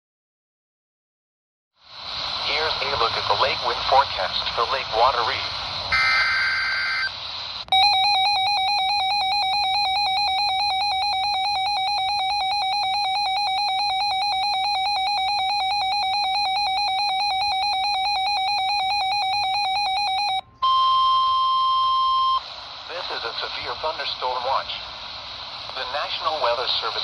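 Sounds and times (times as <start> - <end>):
fluttering electronic alert tone: 5.9 - 7.1.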